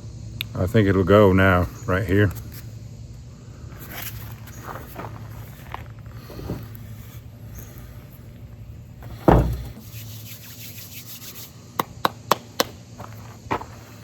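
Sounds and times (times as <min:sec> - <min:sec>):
heavy thump: 0:09.0 - 0:09.8.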